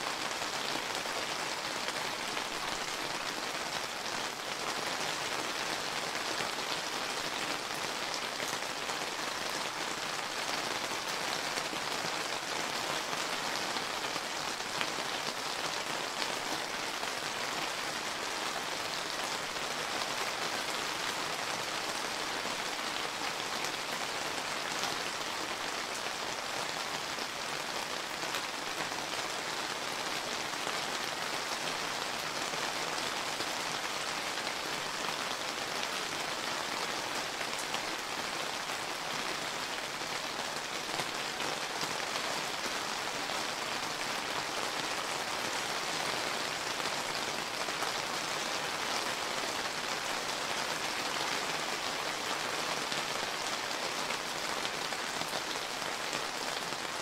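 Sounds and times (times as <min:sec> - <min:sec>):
rain pattering on surfaces: 0:00.0 - 0:57.0.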